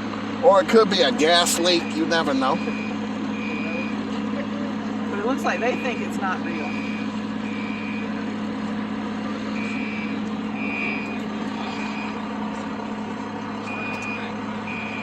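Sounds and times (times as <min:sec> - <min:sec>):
fire alarm high beeps: 0:02.6 - 0:03.9, 0:06.6 - 0:08.1, 0:09.6 - 0:11.2, 0:13.7 - 0:15.0.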